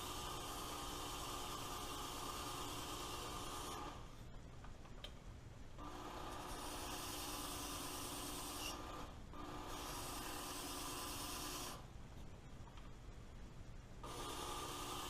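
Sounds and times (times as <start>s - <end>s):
electric belt sharpener running: 14.0s - 15.0s.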